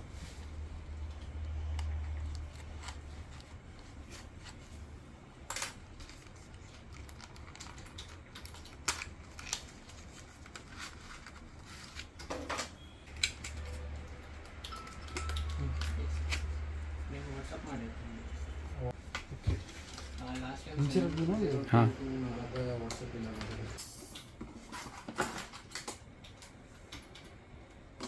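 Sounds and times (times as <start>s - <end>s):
packaging rustling: 5.8s - 12.3s
steady low hum: 13.4s - 23.8s.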